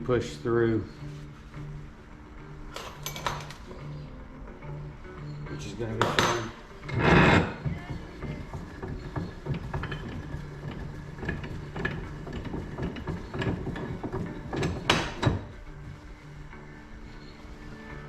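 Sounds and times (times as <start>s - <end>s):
tools and metal parts clinking: 2.7s - 3.9s, 6.0s - 6.6s, 11.2s - 15.5s
loud metal clank: 2.8s - 3.7s, 6.0s - 7.5s.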